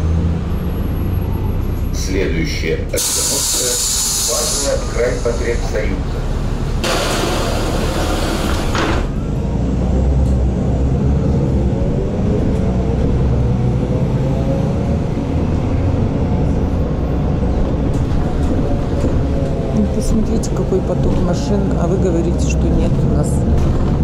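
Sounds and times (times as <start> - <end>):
bus engine whining: 0.0 - 24.0
hissing air from pneumatics: 3.0 - 5.7.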